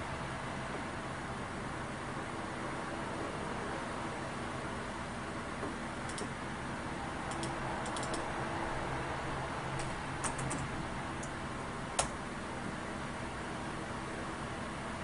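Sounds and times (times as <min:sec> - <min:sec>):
computer keyboard clicks: 0:06.1 - 0:06.3, 0:07.3 - 0:08.2, 0:09.8 - 0:11.4.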